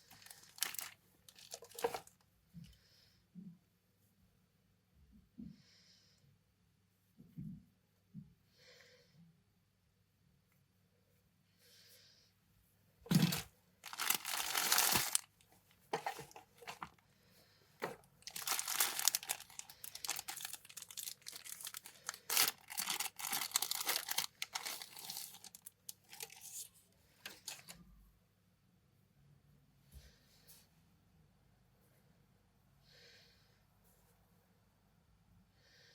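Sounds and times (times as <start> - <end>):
plastic packaging crinkling: 0.0 - 2.1, 13.1 - 17.0, 17.8 - 26.6.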